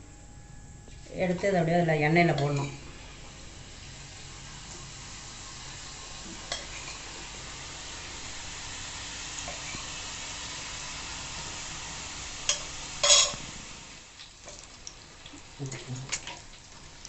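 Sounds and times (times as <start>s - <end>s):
dough frying in hot oil: 0.8s - 17.0s.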